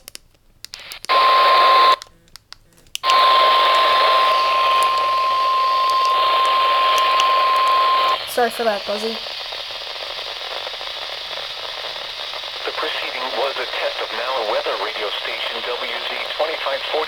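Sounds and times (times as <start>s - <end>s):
clicks: 0.0s - 8.2s
radio static: 0.8s - 2.0s, 3.0s - 17.0s
steady alarm tone: 1.1s - 2.0s, 3.0s - 9.4s.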